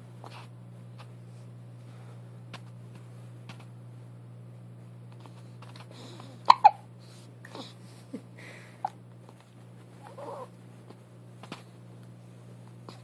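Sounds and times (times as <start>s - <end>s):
baby hiccuping: 6.5s - 6.8s.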